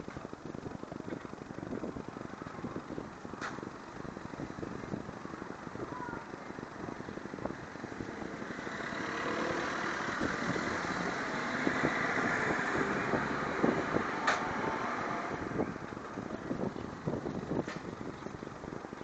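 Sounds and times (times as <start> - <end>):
motor vehicle running: 0.0 - 19.0
sharp click: 14.2 - 14.5.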